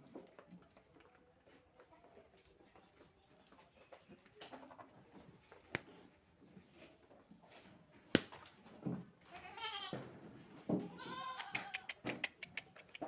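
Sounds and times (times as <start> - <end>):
goats bleating: 9.3 - 10.0, 10.9 - 11.9.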